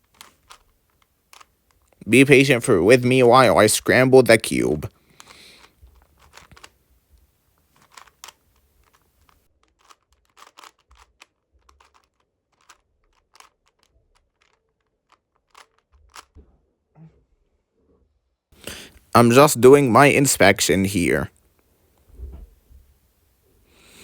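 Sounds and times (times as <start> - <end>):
puzzle cube clacking: 0.0 - 6.8, 7.7 - 16.4.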